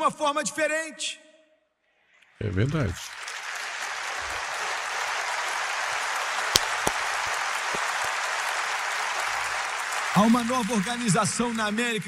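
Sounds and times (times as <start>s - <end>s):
congregation applauding: 2.4s - 12.0s
sharp single claps: 6.4s - 10.2s.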